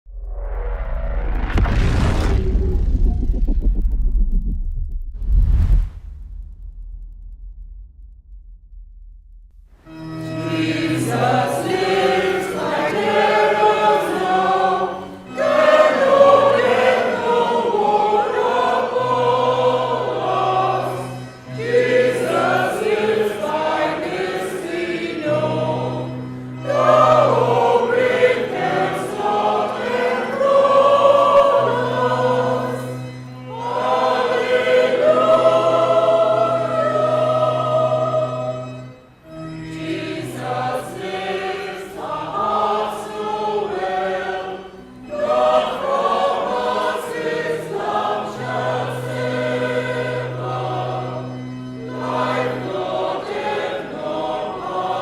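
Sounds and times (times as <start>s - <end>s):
held low notes: 0.1s - 11.2s
church choir singing: 9.8s - 55.0s.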